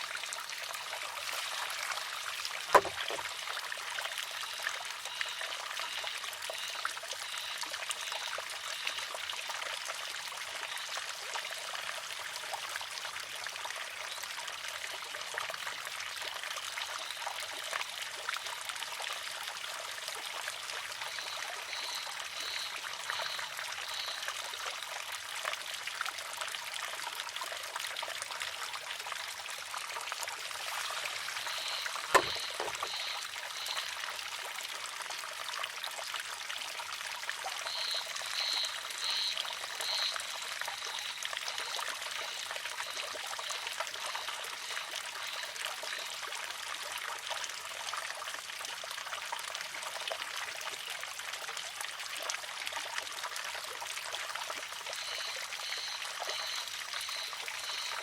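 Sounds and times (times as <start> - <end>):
water trickling: 0.0 - 58.0
sharp wooden clack: 2.7 - 3.3, 31.3 - 33.1.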